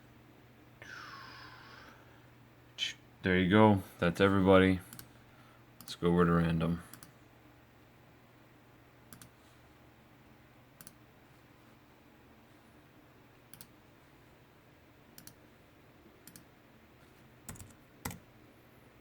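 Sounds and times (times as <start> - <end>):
faint low hum: 0.0 - 19.0
computer mouse clicks: 4.9 - 5.1, 6.9 - 7.2, 9.1 - 9.4, 10.8 - 11.0, 13.5 - 13.8, 15.2 - 15.4, 16.2 - 16.5, 17.5 - 18.2.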